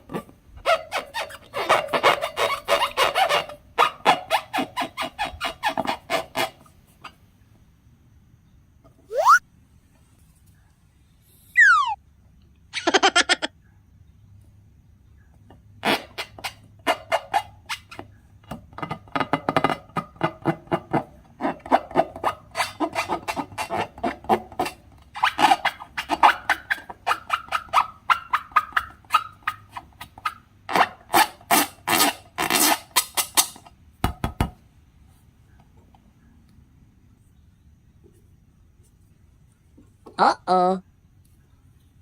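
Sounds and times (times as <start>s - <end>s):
slime squeezed by hand: 9.1s - 9.4s.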